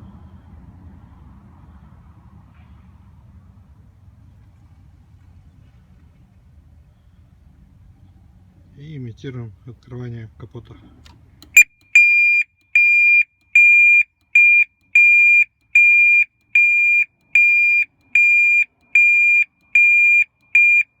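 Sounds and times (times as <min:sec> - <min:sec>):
car alarm beeping: 0:11.4 - 0:21.0.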